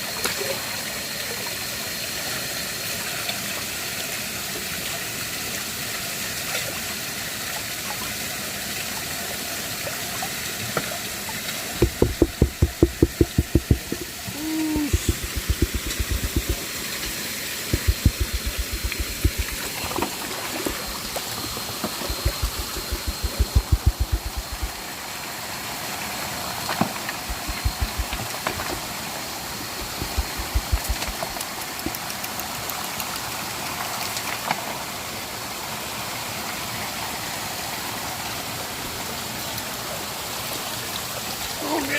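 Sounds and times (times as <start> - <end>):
running water rushing: 3.0 - 41.9
rapid low thumps: 11.8 - 16.6, 17.7 - 19.7, 22.0 - 24.8, 27.3 - 28.2, 29.8 - 31.4.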